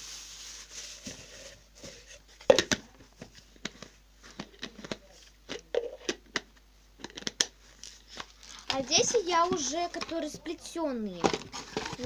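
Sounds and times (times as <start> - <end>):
plastic packet crinkling: 7.2 - 10.2.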